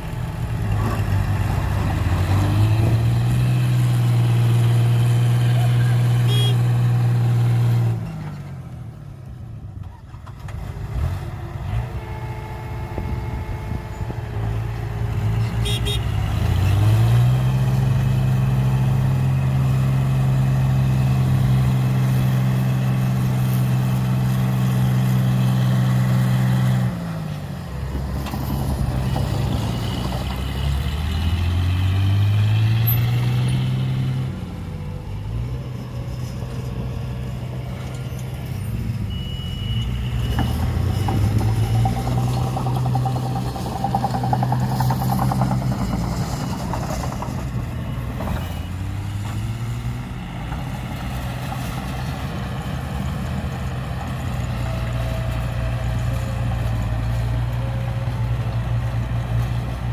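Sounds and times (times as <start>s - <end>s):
heavy diesel engine revving: 0.0s - 8.1s, 13.0s - 38.9s, 40.0s - 57.6s.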